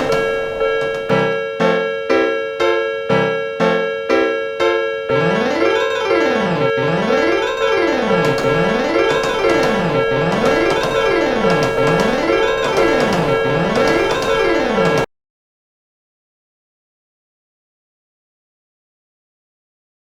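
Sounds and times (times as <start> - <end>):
piano music with fast runs: 0.0 - 15.1.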